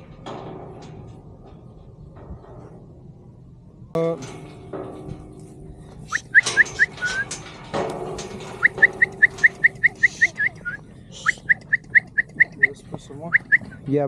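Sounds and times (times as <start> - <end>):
knocks and rattles: 0.0 - 3.2, 4.0 - 10.8
bird chirping: 6.1 - 7.2, 8.6 - 13.8.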